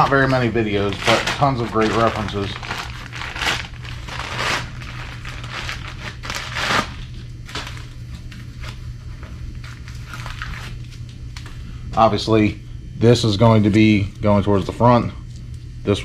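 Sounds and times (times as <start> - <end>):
packaging crinkling and rustling: 0.0 - 11.5.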